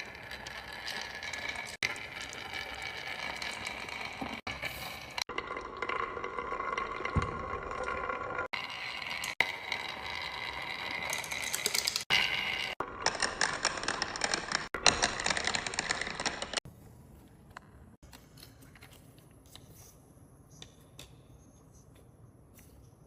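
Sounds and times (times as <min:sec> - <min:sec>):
marbles rolling down wooden ramps: 0:00.0 - 0:16.6.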